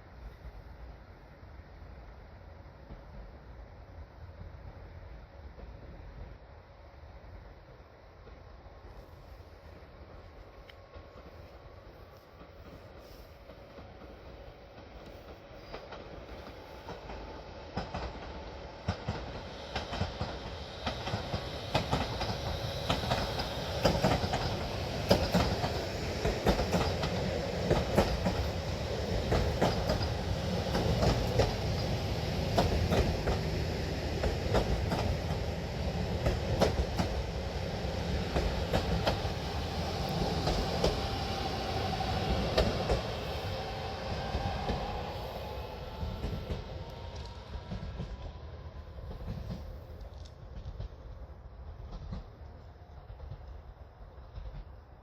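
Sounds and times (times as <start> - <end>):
train rumble: 0.0 - 55.0
train wheels clacking over joints: 14.8 - 35.4.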